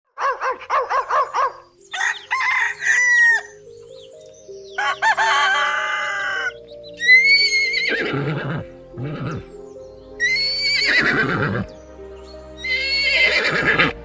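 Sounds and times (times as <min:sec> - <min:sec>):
faint background music: 0:00.2 - 0:14.0
rooster crowing: 0:01.9 - 0:03.6, 0:04.7 - 0:08.7.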